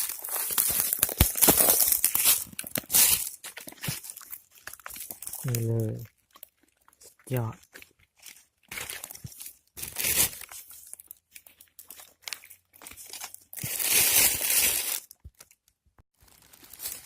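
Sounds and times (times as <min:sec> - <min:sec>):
dry leaves rustling and crunching: 0:00.0 - 0:05.8, 0:08.2 - 0:15.1, 0:16.2 - 0:17.0.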